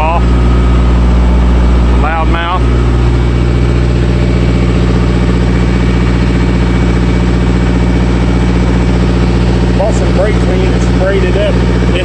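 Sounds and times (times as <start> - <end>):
diesel engine idling: 0.0 - 12.0.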